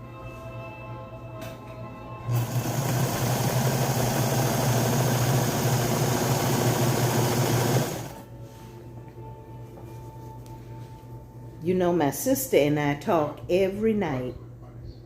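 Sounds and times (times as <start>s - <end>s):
sewing machine running: 2.3s - 8.2s.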